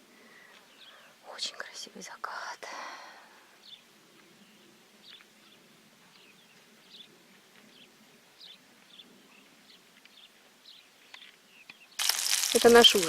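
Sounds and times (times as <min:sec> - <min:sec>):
faint bird chirps: 0:00.2 - 0:02.7.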